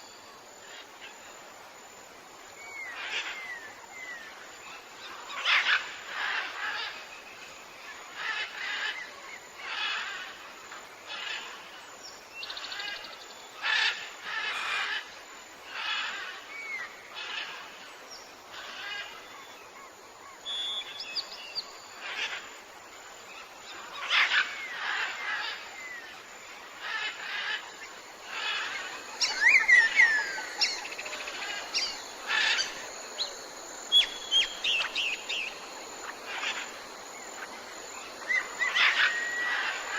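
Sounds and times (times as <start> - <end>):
steady background hiss: 0.0 - 39.9
whistled bird glides: 19.8 - 22.4, 28.3 - 39.9.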